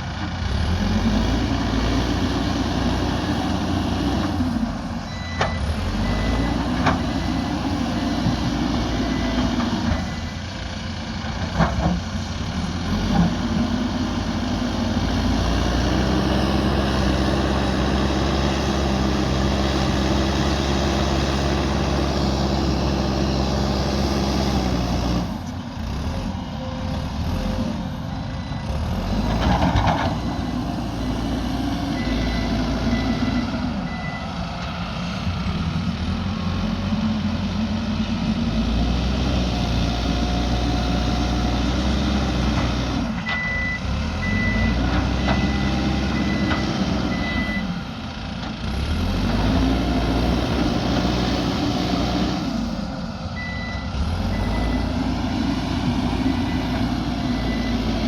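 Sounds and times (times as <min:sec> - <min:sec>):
diesel engine revving: 0:00.0 - 0:58.0
reversing alarm beeps: 0:05.1 - 0:06.7, 0:32.0 - 0:34.4, 0:43.2 - 0:47.8, 0:53.4 - 0:55.0, 0:56.4 - 0:58.0.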